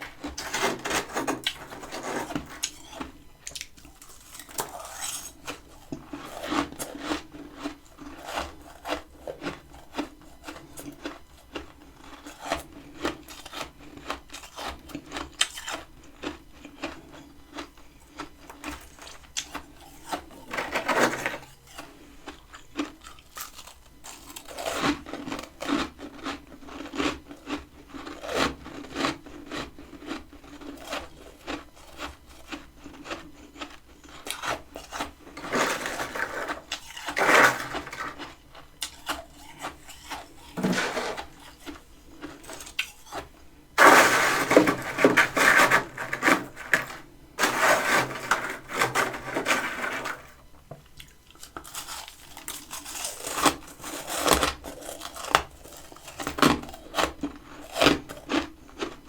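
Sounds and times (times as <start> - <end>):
scraping: 0.0 - 3.1, 20.0 - 21.6, 34.8 - 43.2, 43.8 - 50.5
chewing crunchy frost: 0.0 - 59.0.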